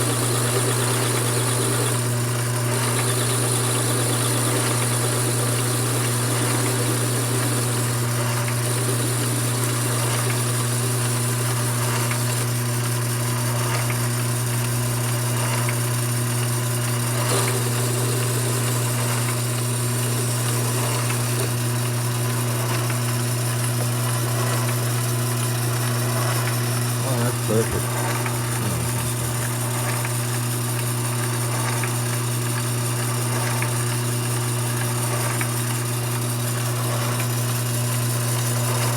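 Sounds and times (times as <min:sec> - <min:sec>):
lathe motor humming: 0:00.0 - 0:23.4, 0:24.2 - 0:30.2.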